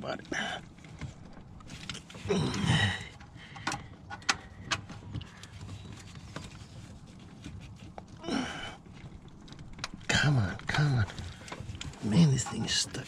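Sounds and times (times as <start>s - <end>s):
man grunting with effort: 2.2s - 3.1s.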